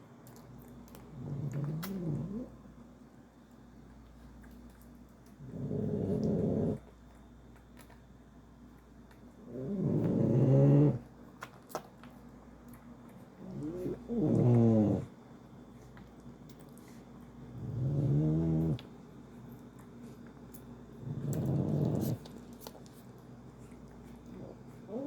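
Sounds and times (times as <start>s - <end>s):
loud snoring: 5.5s - 6.8s, 9.5s - 11.0s, 13.6s - 15.1s, 17.6s - 18.8s, 21.0s - 22.2s.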